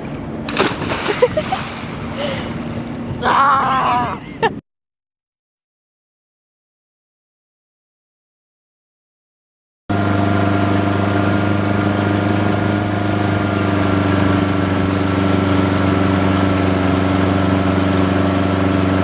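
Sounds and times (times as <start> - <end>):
motorboat engine running: 0.0 - 3.7, 9.9 - 19.0.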